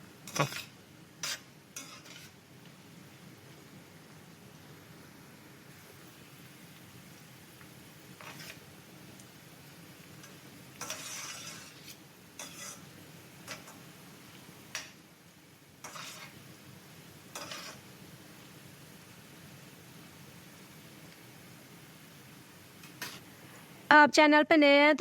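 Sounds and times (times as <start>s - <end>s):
spatula stirring in a pan: 0.0s - 3.5s, 4.8s - 23.5s
faint frying sizzle: 0.0s - 23.9s.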